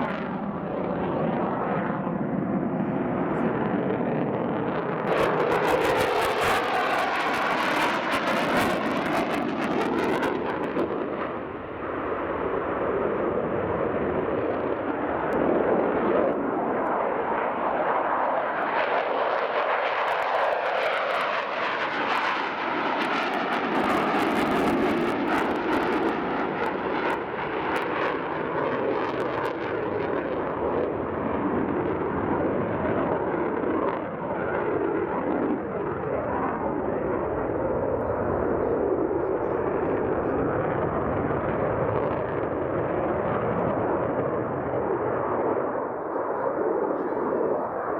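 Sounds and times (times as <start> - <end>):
jet passing overhead: 0.0 - 47.9.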